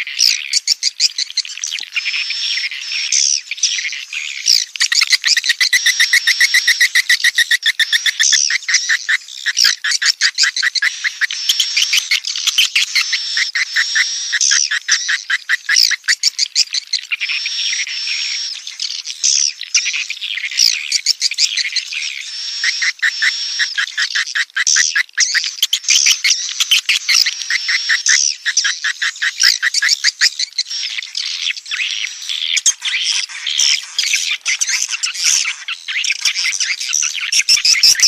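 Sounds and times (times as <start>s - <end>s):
bird chicks chirping and trilling: 0.0s - 38.0s.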